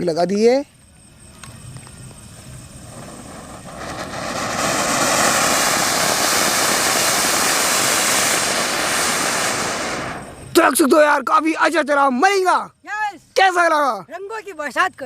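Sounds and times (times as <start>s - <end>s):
firework fountain hissing: 1.0s - 11.2s.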